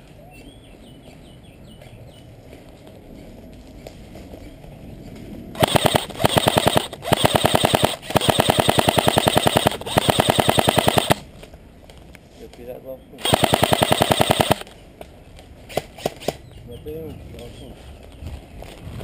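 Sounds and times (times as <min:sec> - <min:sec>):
airsoft gun firing rapid shots: 0:05.6 - 0:11.3, 0:13.2 - 0:14.7.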